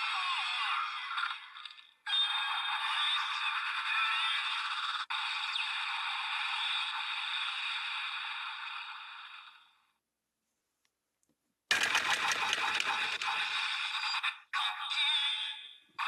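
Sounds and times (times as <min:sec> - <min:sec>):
toy speaker electronic music: 0:02.1 - 0:07.2, 0:11.7 - 0:15.7.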